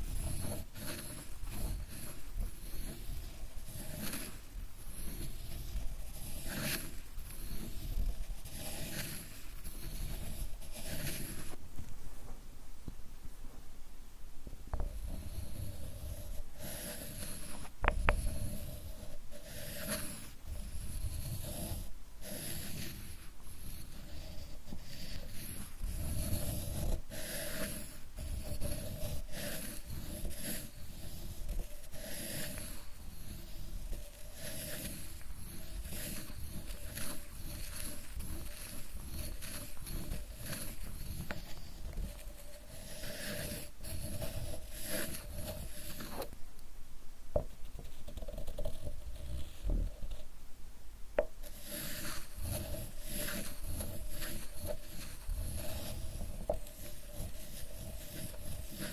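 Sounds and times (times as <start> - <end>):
ink stick rubbing on inkstone: 0.0 - 11.6, 14.7 - 46.4, 47.3 - 50.3, 51.2 - 58.9.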